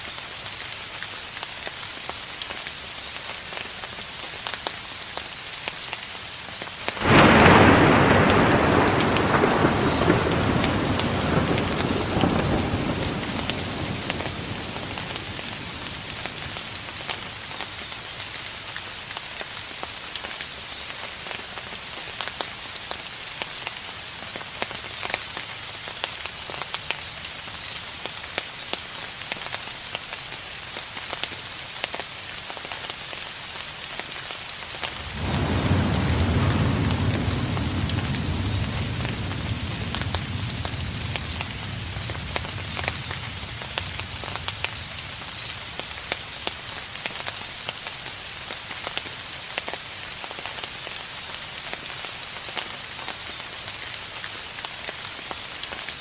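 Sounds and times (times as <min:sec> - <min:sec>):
steady rain falling: 0:00.0 - 0:56.0
thunderclap rumbling: 0:07.0 - 0:17.6, 0:34.9 - 0:47.0.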